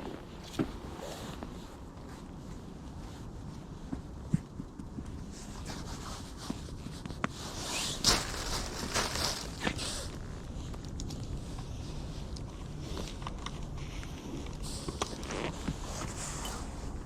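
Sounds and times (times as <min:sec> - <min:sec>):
rustling and scuffing: 0:00.0 - 0:10.8.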